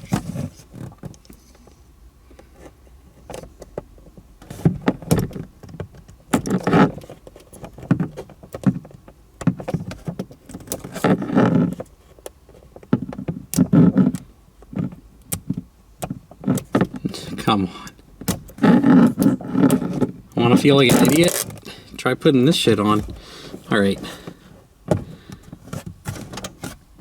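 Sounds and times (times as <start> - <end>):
tape backing rustling: 18.3 - 21.8.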